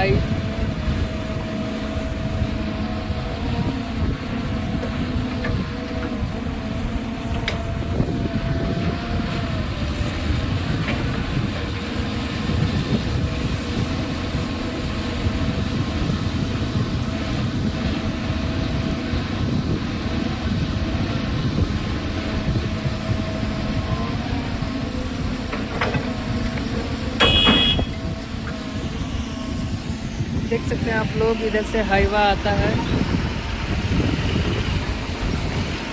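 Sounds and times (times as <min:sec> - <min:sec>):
excavator diesel engine: 0:00.0 - 0:35.9
hydraulic whine: 0:22.8 - 0:35.6
high horn-like tone: 0:27.2 - 0:28.0.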